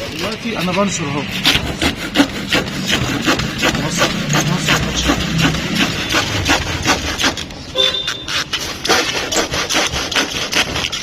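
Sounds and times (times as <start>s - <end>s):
hand saw cutting wood: 0.0s - 11.0s
short horn toot: 7.7s - 8.5s.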